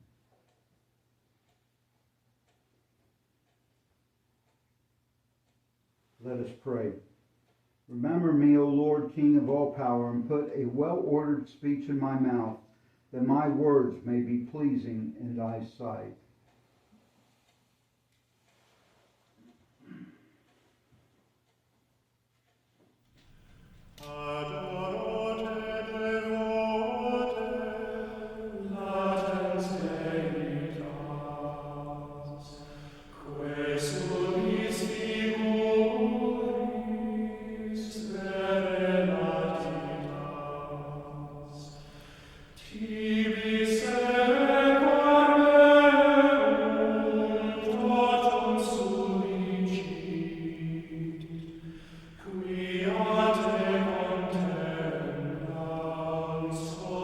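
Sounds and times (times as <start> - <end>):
low voice singing chant: 23.7 - 57.0.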